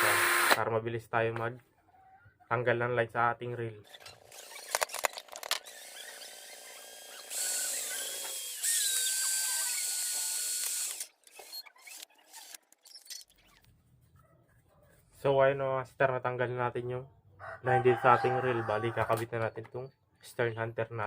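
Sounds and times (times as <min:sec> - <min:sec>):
mini drill motor whine: 0:00.0 - 0:00.6, 0:03.9 - 0:13.3.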